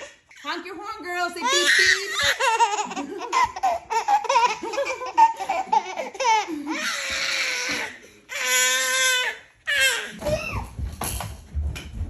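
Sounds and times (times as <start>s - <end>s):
baby laughing and babbling: 1.4s - 8.0s.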